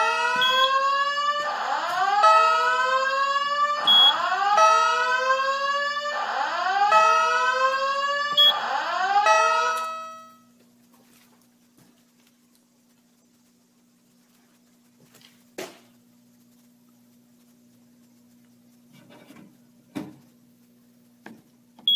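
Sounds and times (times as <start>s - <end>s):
fire alarm evacuation whoop: 0.0s - 10.4s
faint hum: 8.3s - 21.9s.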